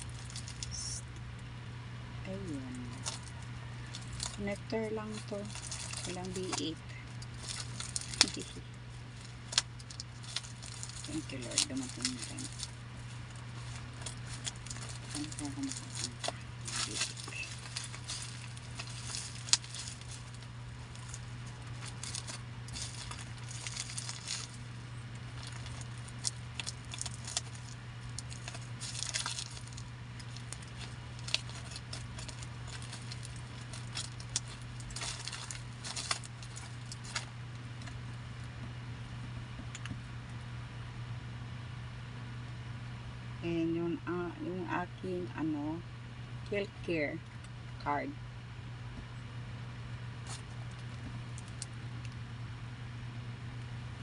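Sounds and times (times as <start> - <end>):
parcel rustling and clicking: 0.0 - 1.0, 2.5 - 38.8, 50.2 - 52.2
steady low hum: 0.0 - 54.0.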